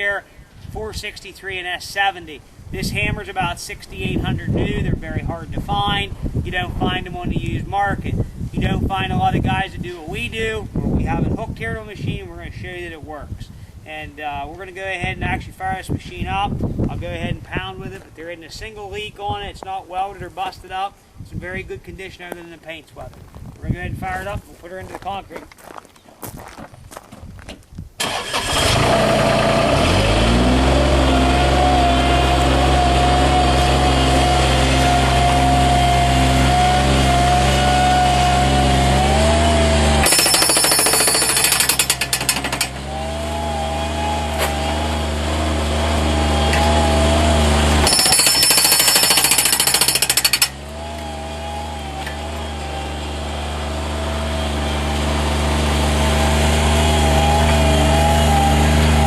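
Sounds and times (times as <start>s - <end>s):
loader engine running: 28.0s - 59.0s
hydraulic breaker pounding concrete: 28.4s - 52.8s, 56.4s - 59.0s.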